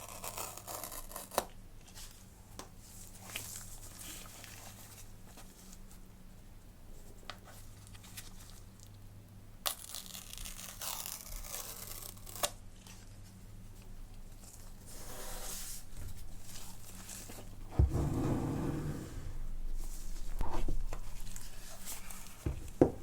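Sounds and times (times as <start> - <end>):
packaging tearing and rustling: 9.7 - 13.2
heavy thump: 17.7 - 19.8.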